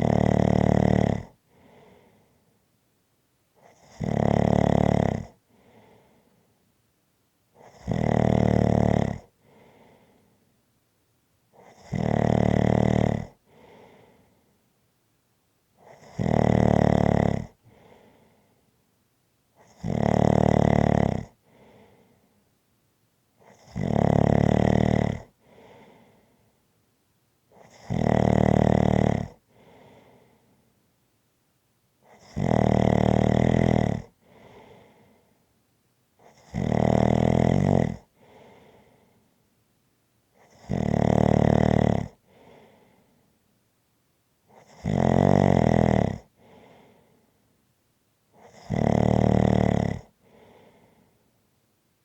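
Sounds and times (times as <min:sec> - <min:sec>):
person snoring: 0:00.0 - 0:01.8, 0:03.6 - 0:05.4, 0:07.6 - 0:09.3, 0:11.6 - 0:14.0, 0:15.9 - 0:18.0, 0:19.6 - 0:21.8, 0:23.5 - 0:26.0, 0:27.6 - 0:30.1, 0:32.1 - 0:34.9, 0:36.2 - 0:38.8, 0:40.4 - 0:42.7, 0:44.6 - 0:46.9, 0:48.4 - 0:50.8
soft breath: 0:01.3 - 0:02.7, 0:05.4 - 0:06.7, 0:09.3 - 0:10.6, 0:13.4 - 0:14.8, 0:17.5 - 0:18.9, 0:21.4 - 0:22.5, 0:25.3 - 0:26.7, 0:29.4 - 0:30.9, 0:34.1 - 0:35.5, 0:38.0 - 0:39.5, 0:42.1 - 0:43.4, 0:46.3 - 0:47.6, 0:50.0 - 0:51.6.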